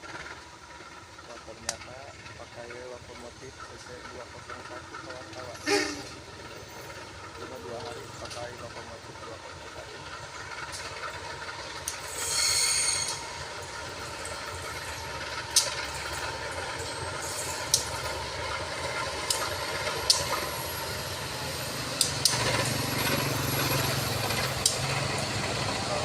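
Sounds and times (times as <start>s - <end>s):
locomotive engine hum: 0.0s - 26.0s
train rail rumble: 0.0s - 26.0s
high screech: 12.1s - 13.2s.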